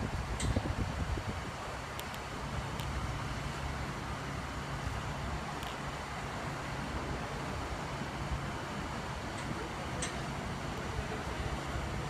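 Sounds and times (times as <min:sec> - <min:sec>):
street traffic: 0:00.0 - 0:12.0.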